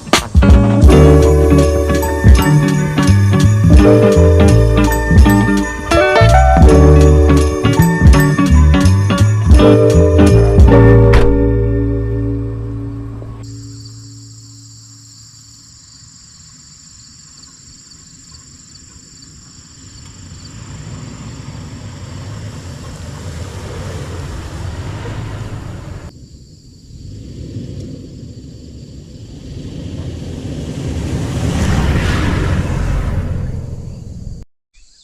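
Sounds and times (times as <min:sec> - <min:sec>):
vehicle rumbling: 0:00.0 - 0:15.4, 0:17.4 - 0:34.4
insects trilling: 0:13.4 - 0:23.6, 0:26.1 - 0:29.7.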